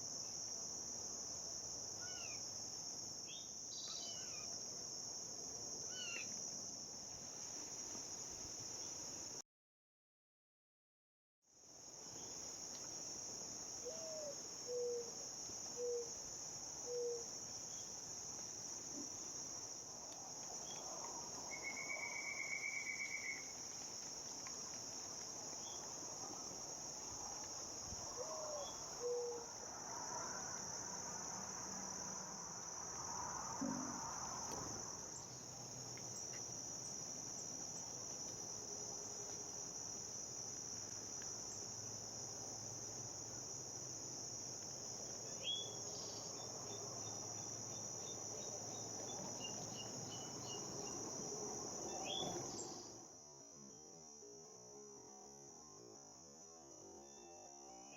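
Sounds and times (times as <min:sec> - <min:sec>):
crickets and insects chirping: 0:00.0 - 0:09.4, 0:11.6 - 0:57.9.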